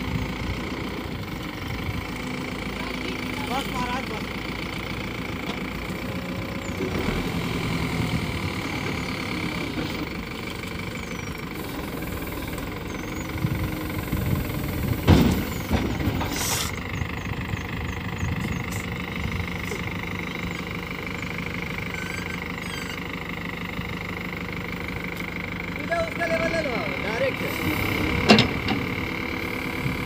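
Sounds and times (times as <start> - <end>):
diesel engine running: 0.0 - 30.0.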